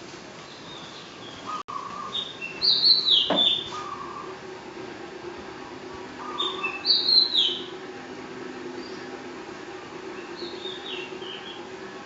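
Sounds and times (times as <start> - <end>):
ceiling fan motor hum: 0.0 - 12.0
small bird chirping: 0.5 - 4.3, 6.2 - 7.7, 10.2 - 11.7.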